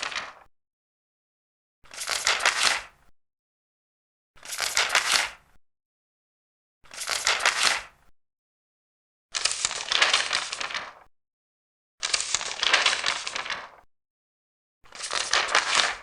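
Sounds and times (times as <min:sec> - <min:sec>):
paper page turning: 0:00.0 - 0:00.5, 0:01.9 - 0:02.9, 0:04.4 - 0:05.4, 0:06.9 - 0:07.9, 0:09.4 - 0:11.1, 0:12.0 - 0:13.8, 0:14.9 - 0:16.0.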